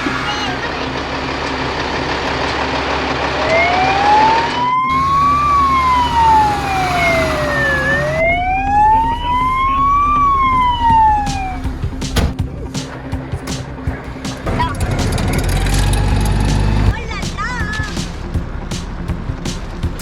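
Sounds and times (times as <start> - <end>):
vehicle noise: 0.0 - 20.0
fire engine siren wailing: 3.0 - 11.8.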